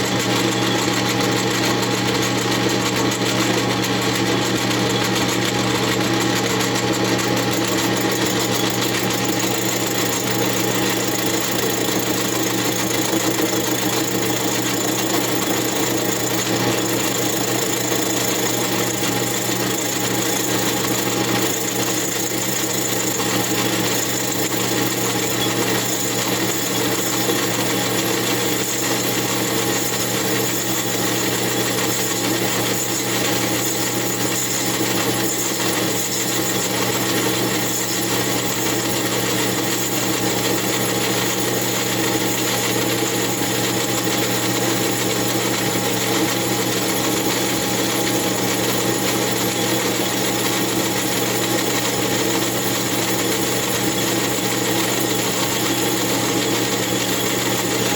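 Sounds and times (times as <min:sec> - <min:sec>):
metal lathe cutting: 0:00.0 - 0:57.9.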